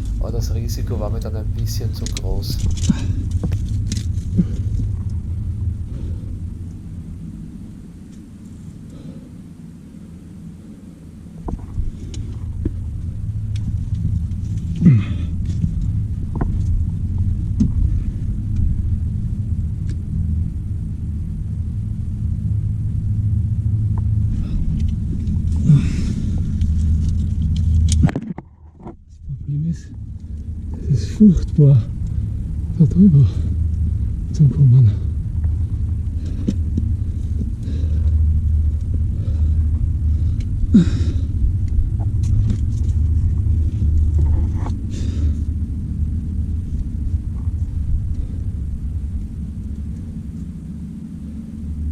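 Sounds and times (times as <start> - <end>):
wind buffeting microphone: 0.0 - 9.2
steady low rumble: 0.0 - 51.9.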